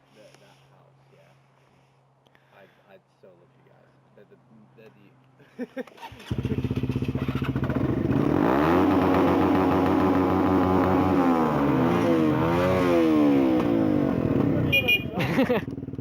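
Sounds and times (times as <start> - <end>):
motorcycle engine starting and revving: 6.0 - 16.0.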